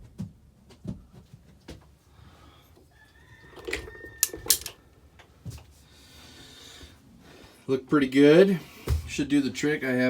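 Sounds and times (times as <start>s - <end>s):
gun sight clicking into place: 3.6s - 4.8s.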